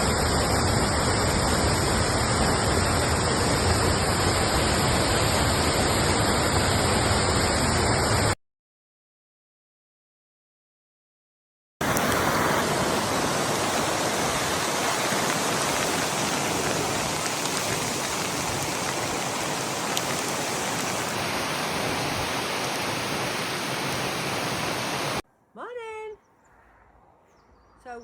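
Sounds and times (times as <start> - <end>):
waterfall rushing: 0.0 - 8.4, 11.8 - 25.2.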